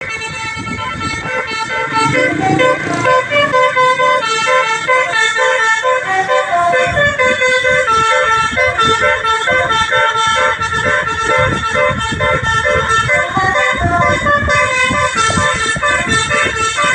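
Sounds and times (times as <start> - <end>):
bus melody horn playing: 0.0 - 16.9
low rumble: 1.2 - 4.6.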